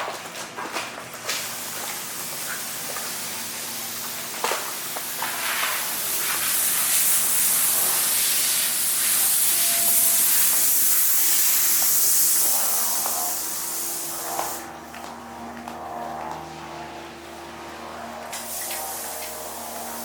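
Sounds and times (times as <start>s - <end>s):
compressed-air tool hissing: 3.6s - 14.7s, 18.3s - 20.0s.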